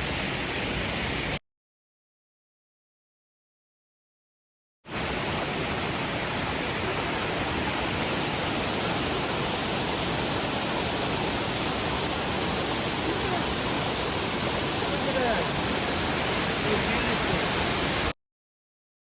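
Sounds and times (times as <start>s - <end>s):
waterfall rushing: 4.9s - 18.2s.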